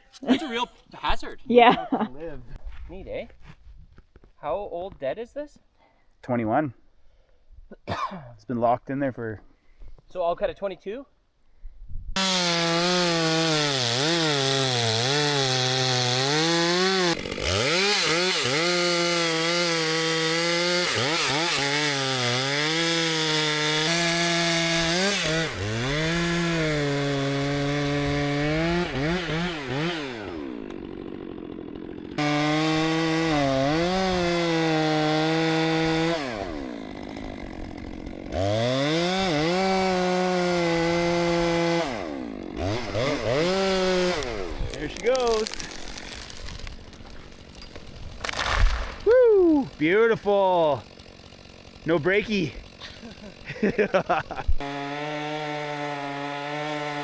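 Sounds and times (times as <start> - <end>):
chainsaw cutting into tree: 12.2 - 57.0.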